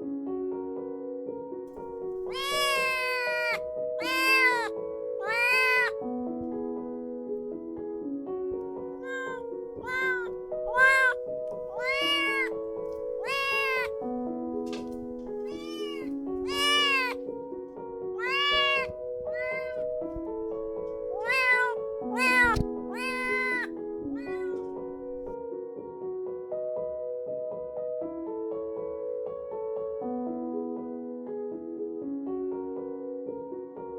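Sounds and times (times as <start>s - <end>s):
soft piano music: 0.0s - 33.9s
kitten meowing: 2.2s - 6.0s, 9.0s - 14.0s, 15.0s - 17.2s, 18.2s - 25.3s.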